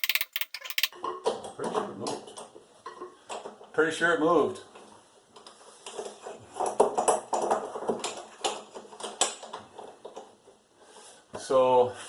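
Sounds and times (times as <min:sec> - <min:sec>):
wrench clicking on metal nut: 0:00.0 - 0:00.9.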